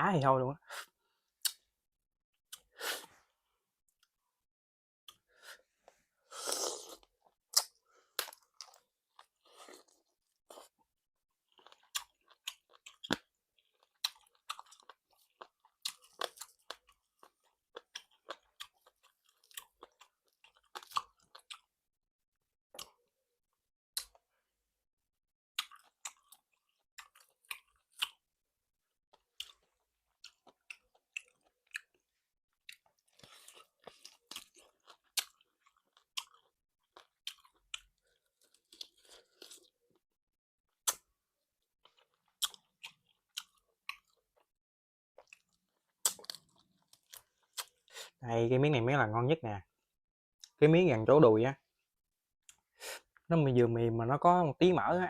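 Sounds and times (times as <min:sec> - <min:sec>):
chewing with wet crunches: 0:11.4 - 0:21.7, 0:29.1 - 0:39.8, 0:41.8 - 0:44.6, 0:45.2 - 0:47.9.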